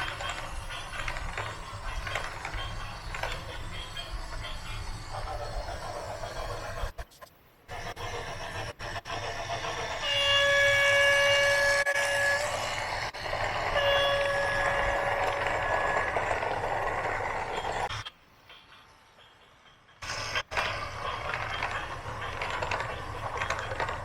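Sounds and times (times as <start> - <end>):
horn blasts: 13.6 - 15.9.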